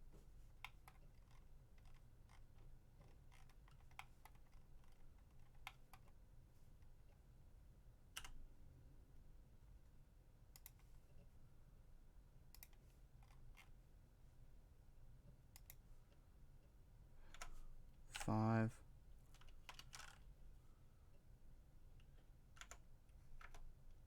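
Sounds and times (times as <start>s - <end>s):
keyboard and mouse clicks: 0.6s - 6.2s, 8.2s - 8.4s, 22.6s - 22.8s.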